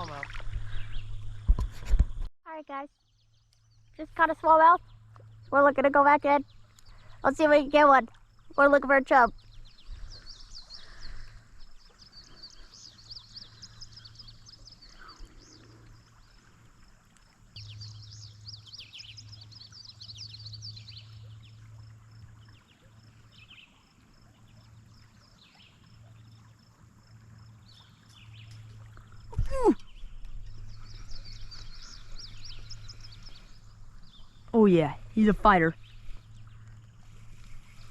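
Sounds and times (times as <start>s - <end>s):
small birds chirping: 2.7s - 16.5s, 27.6s - 37.9s
steady low hum: 26.2s - 37.9s.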